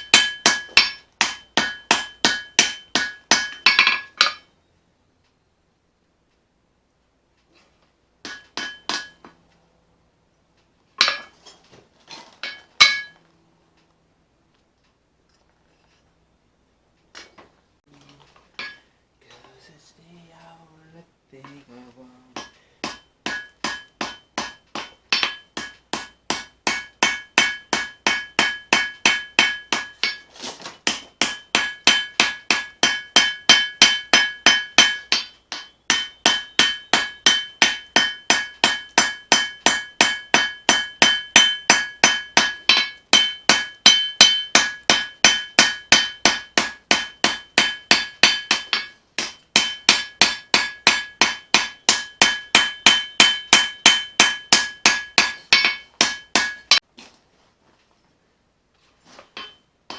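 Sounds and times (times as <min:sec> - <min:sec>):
hammer striking metal on anvil: 0:00.0 - 0:04.6, 0:08.2 - 0:09.4, 0:11.0 - 0:11.6, 0:12.4 - 0:13.2, 0:18.6 - 0:18.9, 0:22.3 - 0:56.9, 0:59.4 - 0:59.9.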